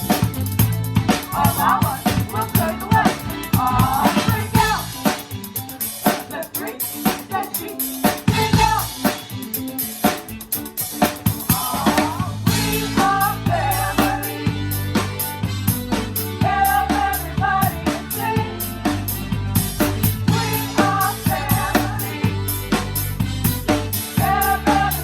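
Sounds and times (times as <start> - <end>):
bass line: 0.0 - 5.1, 8.3 - 9.0, 11.4 - 25.0
drum kit beat: 0.0 - 25.0.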